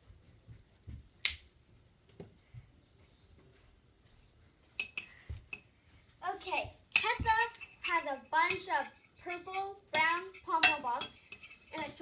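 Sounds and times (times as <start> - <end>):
sharp snap: 1.2 - 1.5.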